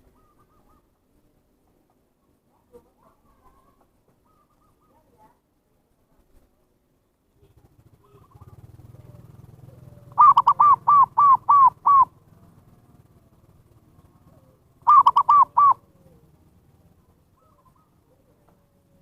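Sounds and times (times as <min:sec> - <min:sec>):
dove cooing: 0:00.0 - 0:01.1, 0:03.0 - 0:05.3, 0:07.5 - 0:19.0.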